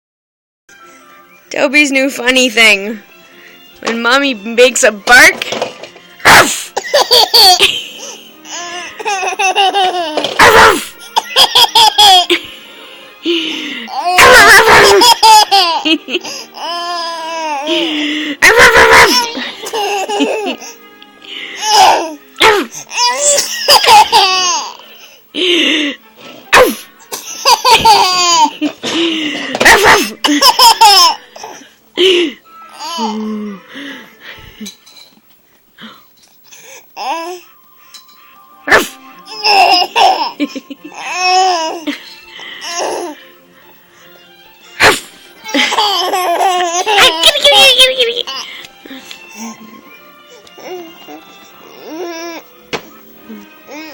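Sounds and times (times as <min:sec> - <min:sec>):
person imitating dog bark: 0:06.2 - 0:06.6, 0:10.3 - 0:10.9, 0:14.2 - 0:15.1, 0:18.4 - 0:19.4, 0:22.4 - 0:22.7, 0:26.5 - 0:26.8, 0:29.6 - 0:30.2, 0:38.7 - 0:39.0, 0:44.8 - 0:45.1
baby laughing: 0:06.3 - 0:12.5, 0:13.9 - 0:20.7, 0:21.6 - 0:24.8, 0:26.6 - 0:31.6, 0:32.8 - 0:33.2, 0:38.7 - 0:43.2, 0:44.8 - 0:48.7.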